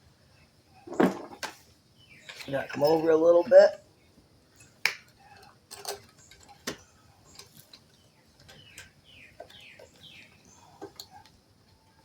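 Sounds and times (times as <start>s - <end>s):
bird chirping: 1.9s - 12.0s
metal parts and tools clicking: 5.3s - 9.9s.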